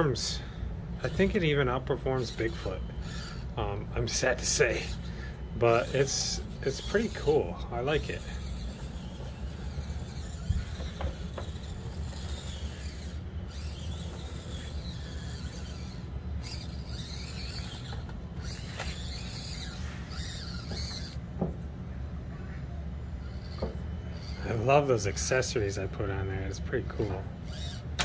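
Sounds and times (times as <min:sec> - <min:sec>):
electric motor and gears whining: 0:00.0 - 0:28.0
tyres scraping over terrain: 0:02.2 - 0:21.2.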